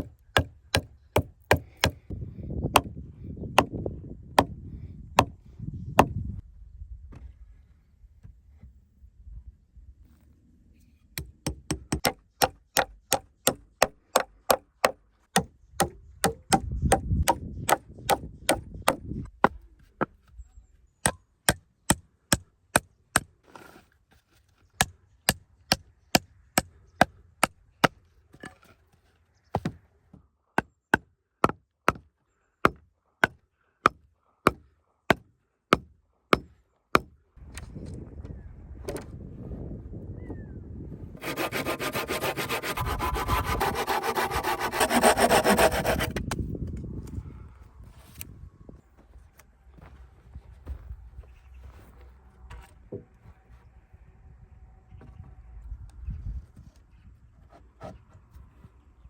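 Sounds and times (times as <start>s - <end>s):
hand tool striking wood: 0.0s - 2.0s, 11.2s - 20.1s, 41.2s - 46.4s
low rasping noise: 41.2s - 46.4s.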